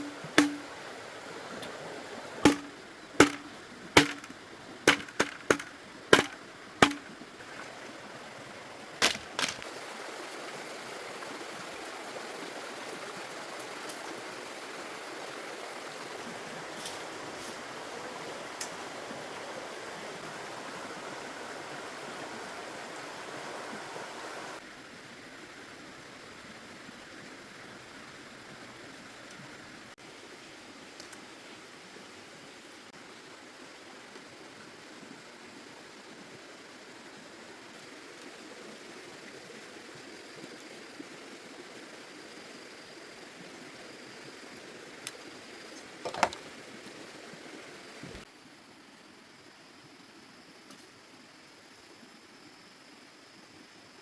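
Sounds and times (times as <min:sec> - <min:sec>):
sharp chopping strikes: 0:00.0 - 0:00.7, 0:02.4 - 0:04.3, 0:04.9 - 0:07.1.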